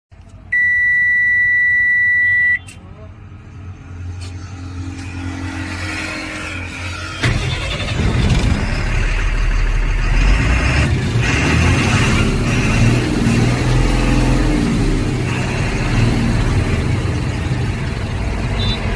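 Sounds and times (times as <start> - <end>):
electronic beep: 0.6 - 2.7
diesel truck engine running: 6.2 - 18.9
starter motor cranking: 7.1 - 9.0.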